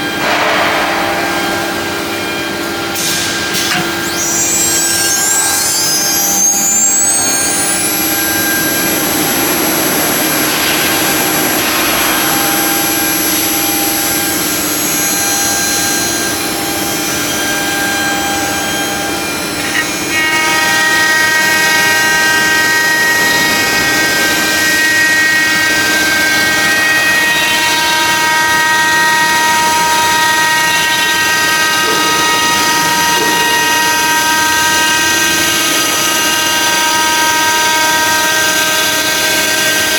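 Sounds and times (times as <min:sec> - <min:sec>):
router spindle whine: 0:01.4 - 0:39.9.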